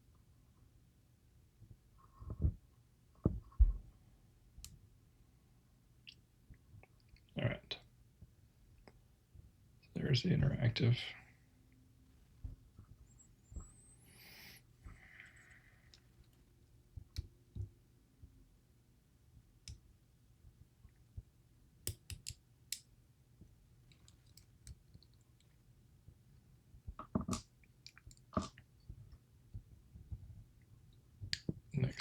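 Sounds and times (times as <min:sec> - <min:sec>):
small tool clicks and taps: 0:21.9 - 0:22.9.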